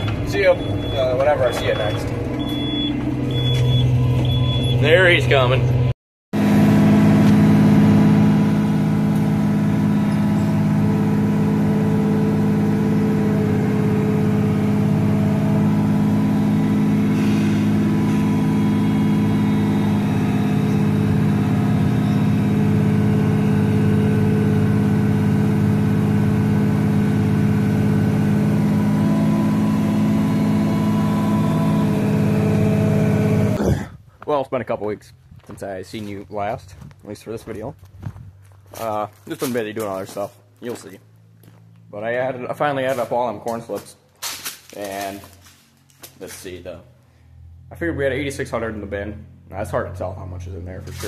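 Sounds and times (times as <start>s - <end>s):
engine humming steadily: 0.0s - 33.6s, 44.9s - 51.0s.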